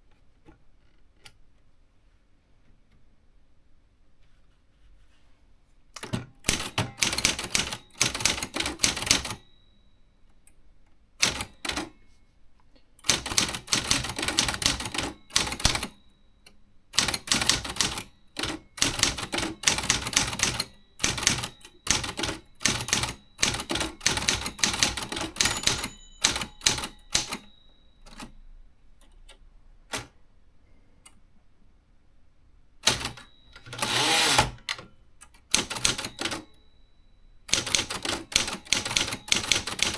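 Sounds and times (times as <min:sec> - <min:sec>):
typewriter keystrokes: 0:06.0 - 0:09.4, 0:11.2 - 0:12.0, 0:13.0 - 0:16.0, 0:17.0 - 0:28.3, 0:32.8 - 0:36.5, 0:37.5 - 0:39.9.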